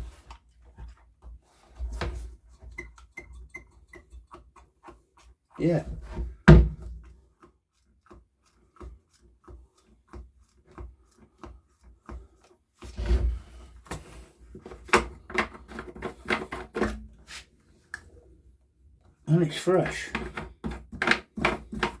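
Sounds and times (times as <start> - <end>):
rubbing and clatter: 0.0 - 17.5, 19.2 - 22.0
handling clicks and knocks: 14.6 - 17.2, 19.4 - 22.0.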